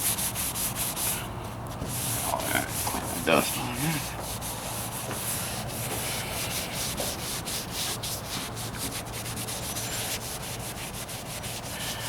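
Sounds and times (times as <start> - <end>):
rag rubbing on a surface: 1.8 - 12.0.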